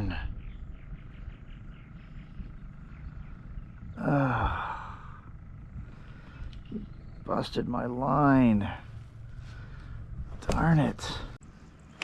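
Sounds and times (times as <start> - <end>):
faint rhythmic chirping: 0.0 - 10.3
man groaning: 4.0 - 5.3.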